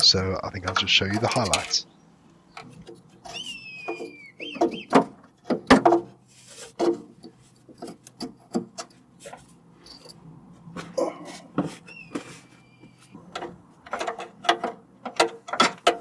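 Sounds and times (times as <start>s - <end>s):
hand tools tapping on engine: 0.0s - 6.2s, 6.8s - 16.0s
high sliding whistle: 3.3s - 4.9s.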